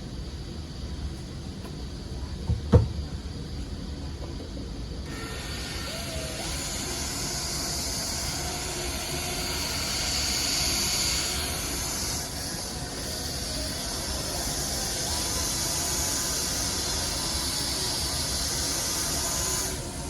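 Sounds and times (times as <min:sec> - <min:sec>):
cordless buffer whirring: 0:05.1 - 0:20.0.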